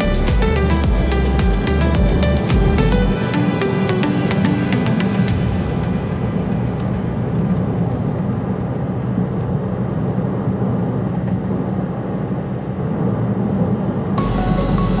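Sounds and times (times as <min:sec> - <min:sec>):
music with sustained tones: 0:00.0 - 0:08.3, 0:14.2 - 0:15.0
jet airliner rumbling overhead: 0:04.0 - 0:14.9.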